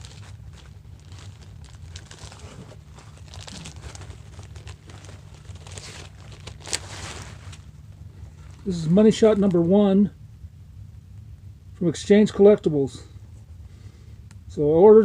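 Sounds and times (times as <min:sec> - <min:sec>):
packaging crinkling and rustling: 0:00.0 - 0:09.7.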